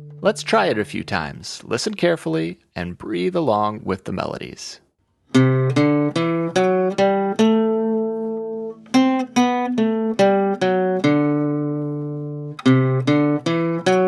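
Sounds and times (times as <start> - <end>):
guitar plucking slow melody: 0.0 - 2.0, 5.2 - 14.0.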